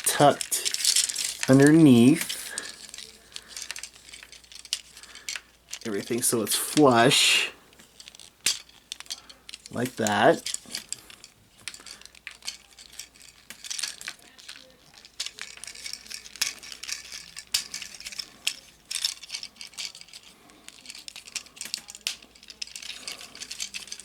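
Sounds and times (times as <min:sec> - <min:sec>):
plastic rubbing: 0:00.0 - 0:07.1
plastic toy parts clicking: 0:00.0 - 0:24.0.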